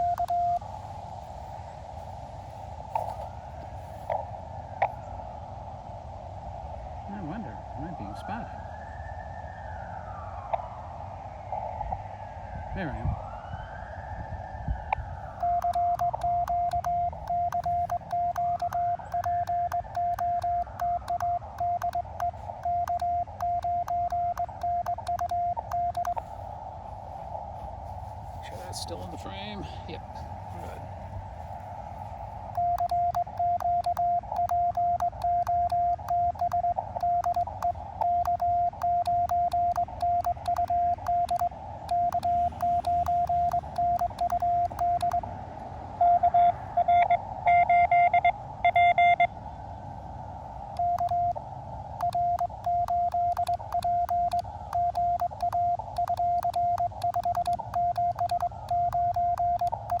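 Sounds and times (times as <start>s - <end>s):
louder keyed tone: 0.0s - 0.6s, 15.4s - 26.2s, 32.5s - 45.2s, 50.8s - 51.4s, 52.0s - 60.0s
morse code tone: 0.0s - 0.7s, 15.4s - 26.4s, 32.4s - 45.2s, 46.0s - 49.3s, 50.7s - 51.4s, 52.0s - 60.0s
receiver hiss: 0.0s - 60.0s.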